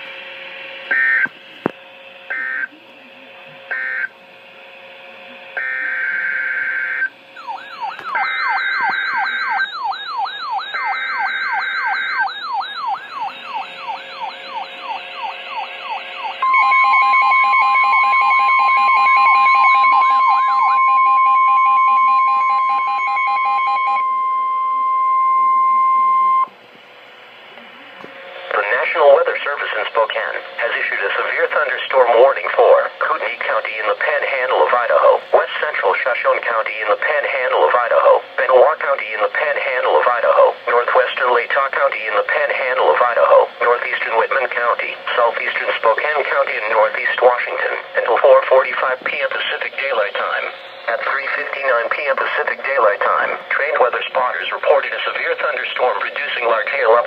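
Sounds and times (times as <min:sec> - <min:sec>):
warbling siren alarm: 0:00.8 - 0:01.4, 0:02.2 - 0:02.8, 0:03.7 - 0:04.2, 0:05.2 - 0:26.5
steady alert tone: 0:07.4 - 0:26.5
harsh screeching data bursts: 0:49.4 - 0:54.6.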